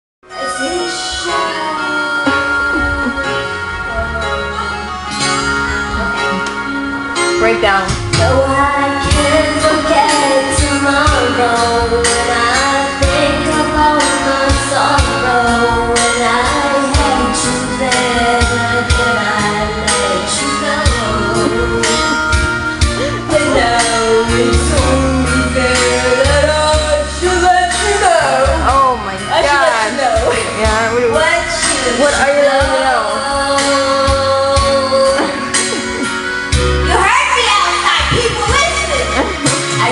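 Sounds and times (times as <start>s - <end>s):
person singing: 0.3s - 7.4s, 8.1s - 36.8s
steady drum beat: 14.5s - 37.1s.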